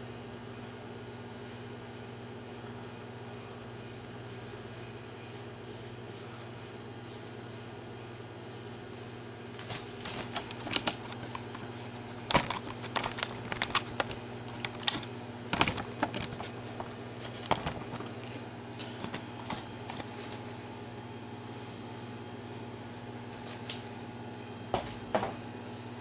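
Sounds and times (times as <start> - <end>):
microwave oven humming: 0.0 - 26.0
sharp clicks and ticks: 12.3 - 16.9.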